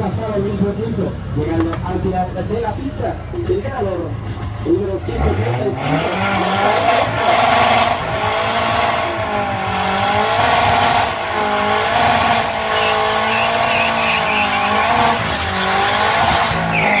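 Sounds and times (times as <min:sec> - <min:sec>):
racing car engines revving: 0:00.0 - 0:17.0
short high tyre squeals: 0:06.4 - 0:09.9, 0:10.6 - 0:17.0.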